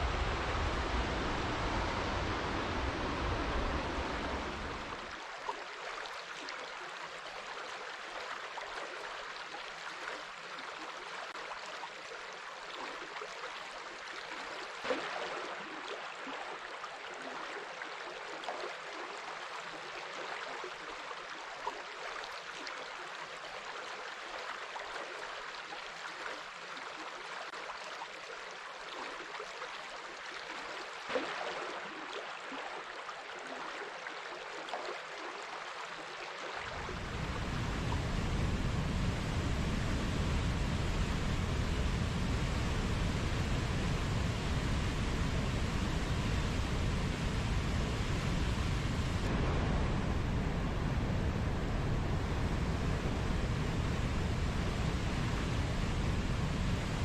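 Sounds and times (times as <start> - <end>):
deep rumble: 0.0 - 5.1, 36.8 - 57.0
rushing water: 0.0 - 57.0.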